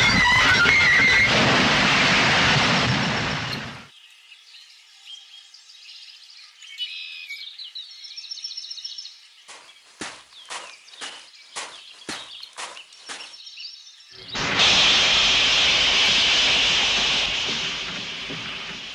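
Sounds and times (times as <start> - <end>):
outdoor ambience: 0.0 - 18.9
birds chirping: 3.4 - 14.6.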